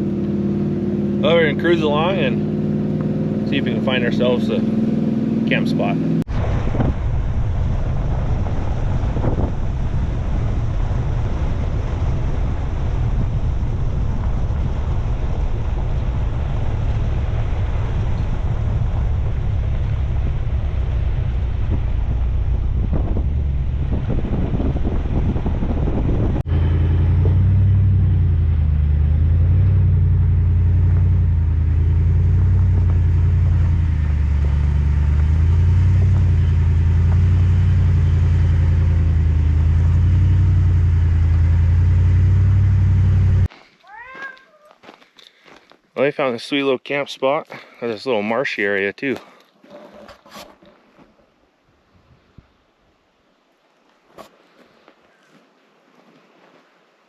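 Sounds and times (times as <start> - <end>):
low engine drone: 0.0 - 43.5
truck engine and tyre rumble: 0.0 - 46.1.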